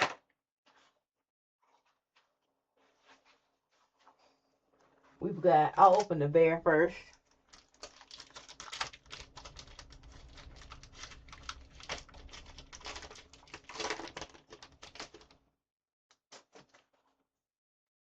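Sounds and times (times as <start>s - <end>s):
plastic packaging crackling: 7.1s - 15.4s.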